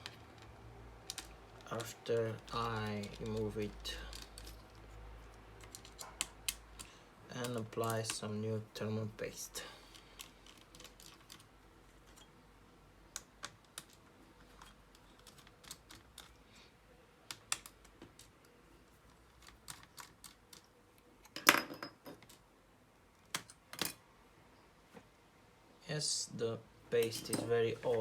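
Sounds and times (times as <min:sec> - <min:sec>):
laptop parts clicking and tapping: 0:00.0 - 0:08.2, 0:09.9 - 0:12.3, 0:13.1 - 0:16.4, 0:17.2 - 0:21.4, 0:23.2 - 0:24.0.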